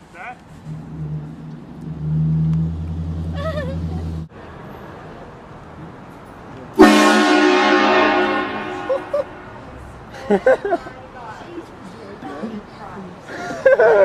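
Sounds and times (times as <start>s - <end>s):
train horn blast: 6.8s - 9.8s.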